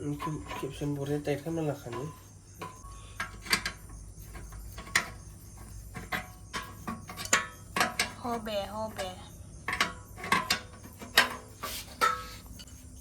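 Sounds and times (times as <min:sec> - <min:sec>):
spanner clicking on metal: 0:01.9 - 0:05.2.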